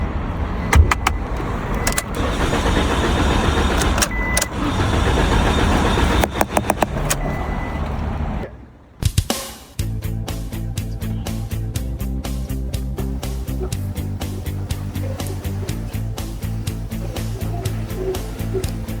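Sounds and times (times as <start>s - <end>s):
car engine running: 0.0s - 8.7s
sharp clicks: 0.7s - 7.3s.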